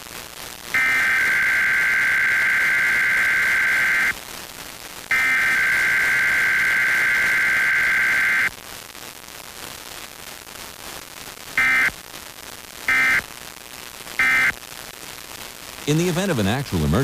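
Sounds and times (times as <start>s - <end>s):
radio hiss: 0.0s - 8.6s, 11.2s - 17.0s
digital data tones warble: 0.8s - 4.2s, 5.1s - 8.5s, 11.6s - 11.9s.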